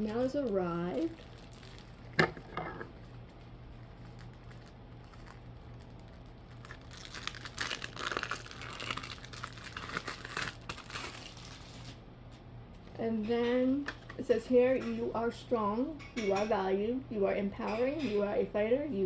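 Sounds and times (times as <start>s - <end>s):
wrapper crinkling: 0.0s - 12.0s
low steady hum: 0.0s - 19.0s.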